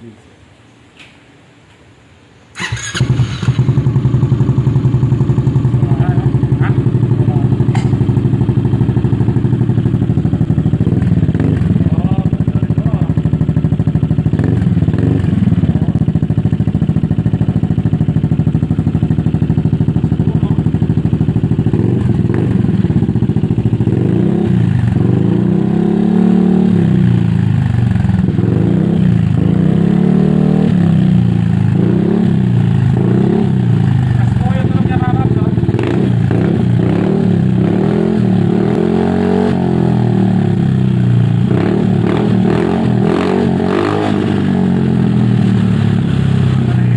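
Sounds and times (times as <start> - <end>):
scooter engine idling and revving: 2.6 - 46.9.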